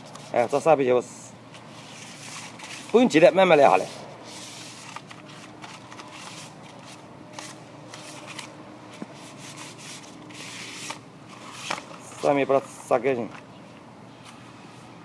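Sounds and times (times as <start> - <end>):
sandpaper rubbing on metal: 1.7 - 4.9.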